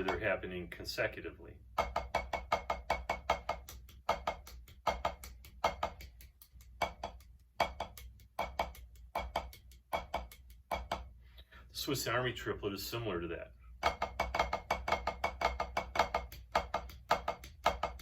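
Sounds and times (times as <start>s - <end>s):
drumsticks striking a drum: 0.0s - 0.3s, 1.8s - 11.1s.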